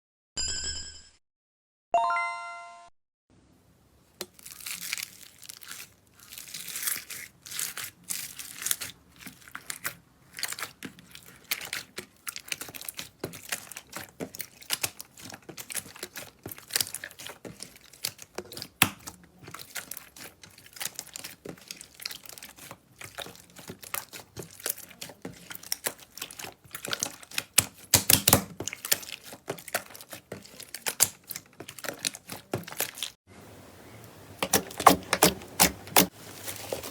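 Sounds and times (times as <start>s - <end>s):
slime squeezed and stretched: 4.2s - 33.2s.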